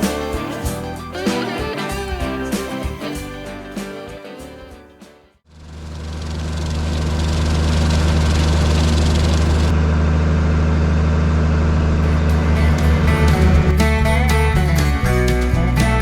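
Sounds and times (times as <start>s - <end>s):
farm machine engine humming: 5.5s - 16.0s.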